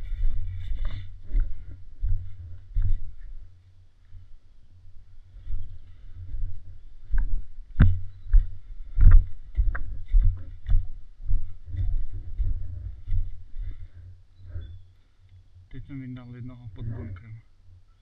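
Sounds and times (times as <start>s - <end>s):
low rumbling and thudding: 6.2s - 14.6s.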